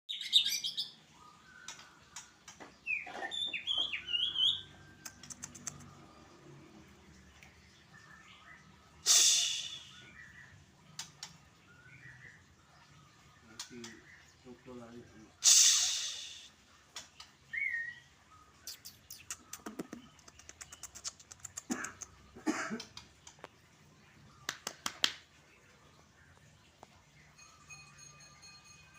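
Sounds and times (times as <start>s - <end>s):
bird whistling: 2.9s - 4.7s, 9.0s - 10.2s
bird clicks and taps in cage: 5.0s - 5.9s, 10.9s - 11.4s, 22.8s - 23.6s, 24.4s - 25.3s
sharp clicks: 5.0s - 5.9s.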